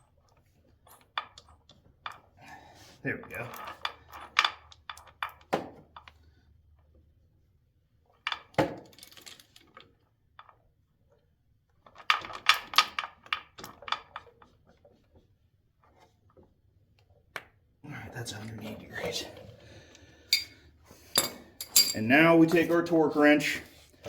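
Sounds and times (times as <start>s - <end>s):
metal tool clinks: 21.2s - 22.1s.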